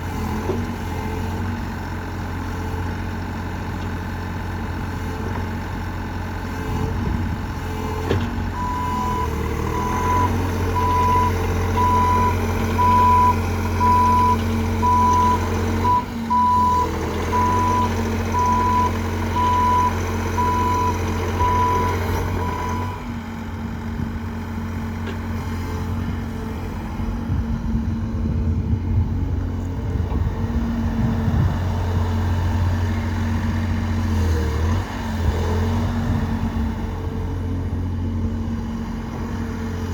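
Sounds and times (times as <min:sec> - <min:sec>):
excavator diesel engine running: 0:00.0 - 0:39.9
travel alarm beeping: 0:08.6 - 0:21.9.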